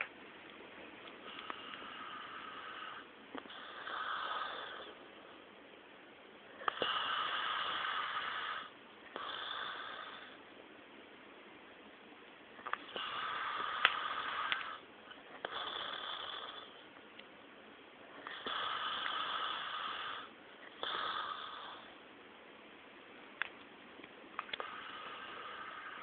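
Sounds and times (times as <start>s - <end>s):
quiet breathing: 0.8s - 5.6s, 6.4s - 10.5s, 12.6s - 17.0s, 18.0s - 22.1s, 24.4s - 26.0s
person snoring: 1.3s - 5.0s, 6.6s - 10.4s, 12.8s - 14.8s, 15.4s - 16.8s, 18.2s - 21.9s, 24.6s - 26.0s.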